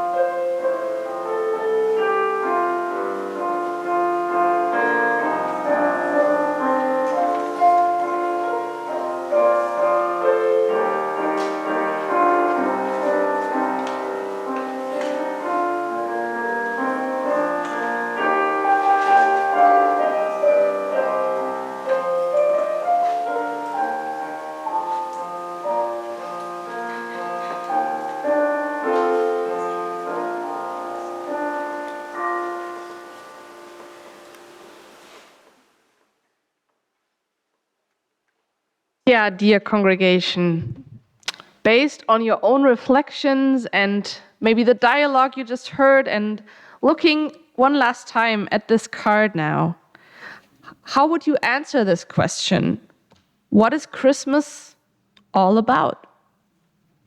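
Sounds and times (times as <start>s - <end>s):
piano music: 0.0s - 35.8s.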